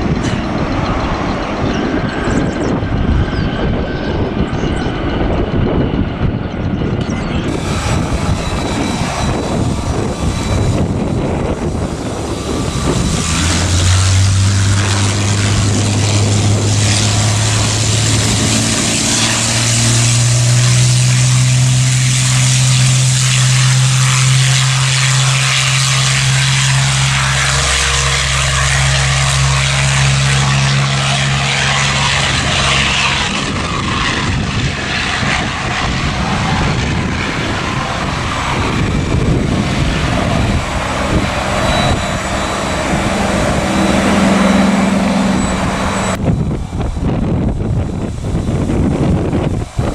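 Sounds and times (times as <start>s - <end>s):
propeller airplane engines droning: 0.0s - 49.9s
steady rushing hiss: 7.5s - 31.2s.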